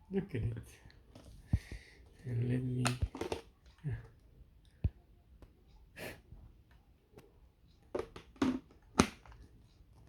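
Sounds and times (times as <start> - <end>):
plastic parts clicking and rustling: 2.8 - 3.8.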